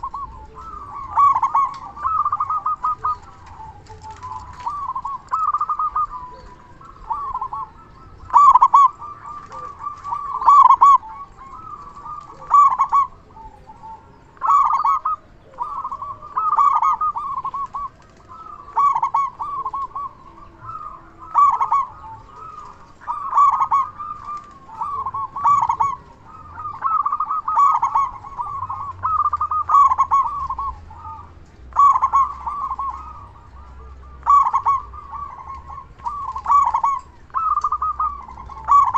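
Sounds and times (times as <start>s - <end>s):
dove cooing: 0.0s - 38.9s.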